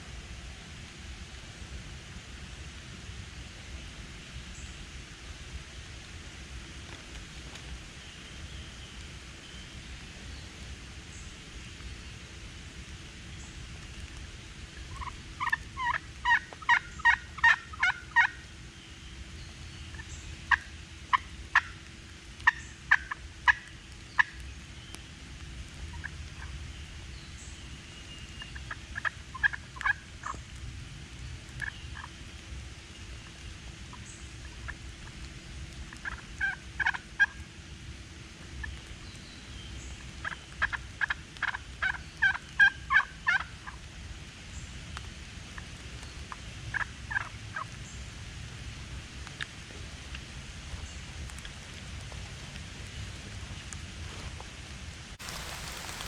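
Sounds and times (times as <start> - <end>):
wild turkey yelping: 14.9 - 18.4, 36.0 - 37.4, 40.2 - 43.5, 55.2 - 56.0.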